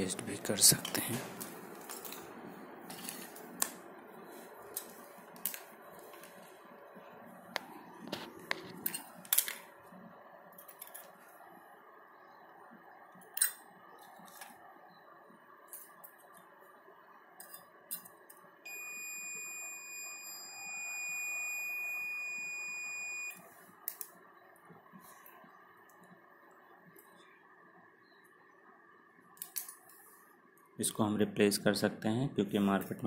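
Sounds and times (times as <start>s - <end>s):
multimeter continuity beep: 18.7s - 27.4s.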